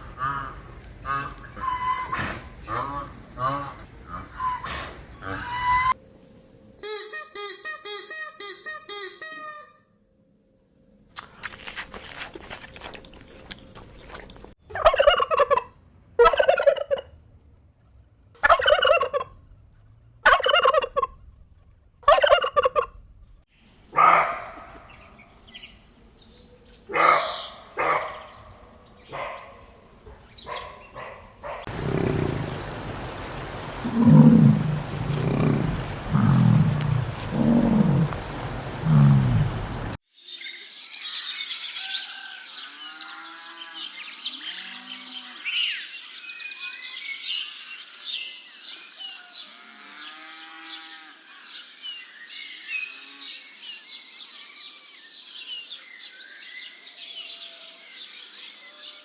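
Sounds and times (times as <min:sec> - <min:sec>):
lower-pitched animal calls: 0:14.7 - 0:15.6, 0:16.2 - 0:17.0, 0:18.4 - 0:19.2, 0:20.3 - 0:21.1, 0:22.1 - 0:22.9, 0:30.5 - 0:40.0
poultry calling: 0:14.7 - 0:15.6, 0:16.2 - 0:17.0, 0:18.4 - 0:19.2, 0:20.3 - 0:21.1, 0:22.1 - 0:22.9, 0:26.9 - 0:40.0
steady background noise: 0:31.7 - 0:40.0.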